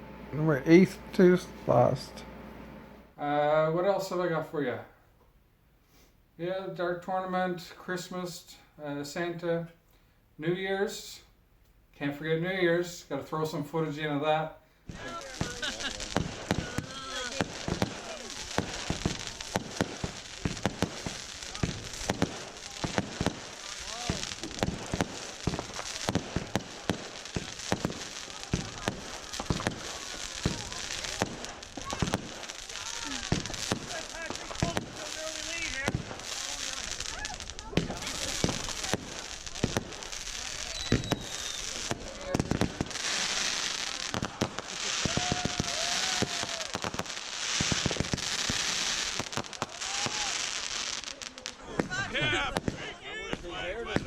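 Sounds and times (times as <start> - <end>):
fireworks bangs and pops: 14.8 - 54.0
fireworks crackle: 14.8 - 54.0
faint firework whistle: 35.4 - 42.3, 44.1 - 48.6, 49.6 - 50.6.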